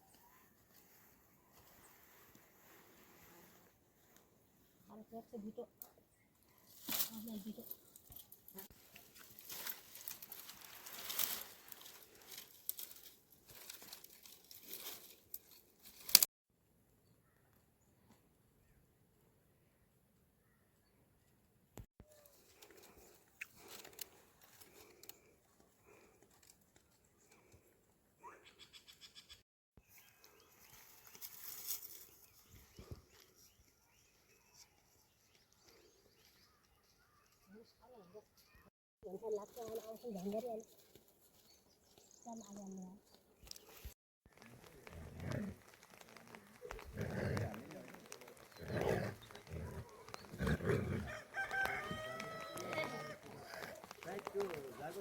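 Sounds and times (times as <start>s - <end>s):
rustling and crinkling: 6.6s - 16.3s, 22.0s - 27.6s, 29.9s - 33.4s, 39.3s - 55.0s.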